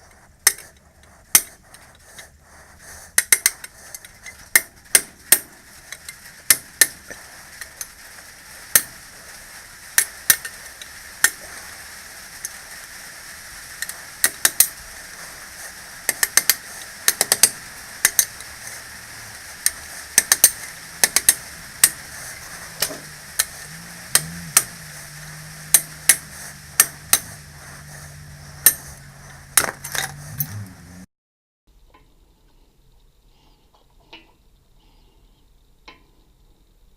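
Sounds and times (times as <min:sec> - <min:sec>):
hand tools tapping on metal: 0:00.4 - 0:01.6, 0:03.1 - 0:07.9, 0:08.7 - 0:08.9, 0:10.0 - 0:10.6, 0:13.8 - 0:14.8, 0:16.0 - 0:31.0
low steady hum: 0:10.7 - 0:31.1.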